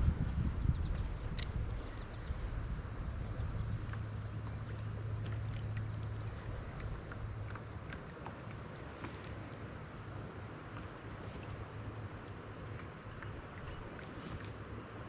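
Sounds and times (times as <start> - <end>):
wind noise: 0.0 - 4.2
low hum: 0.0 - 8.2.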